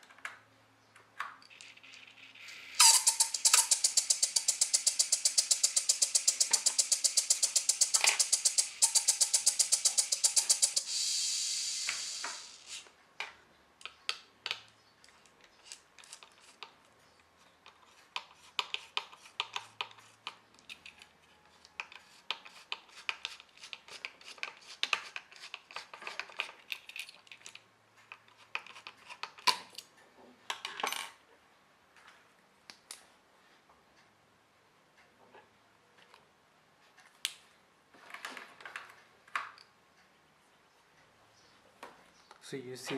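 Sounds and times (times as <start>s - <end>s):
light ticks and clicks: 2.8s - 10.9s
hard drive arm clicking: 2.8s - 12.8s
motor whir: 2.8s - 12.8s.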